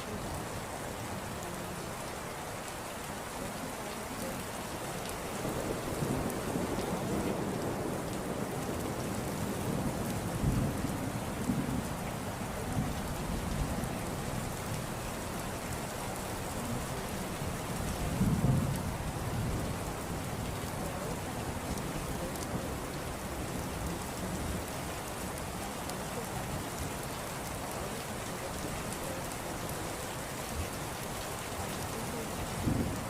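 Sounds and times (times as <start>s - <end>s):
steady rain falling: 0.0s - 33.0s
low rumble of thunder: 5.3s - 15.3s, 16.4s - 25.5s, 32.0s - 33.0s.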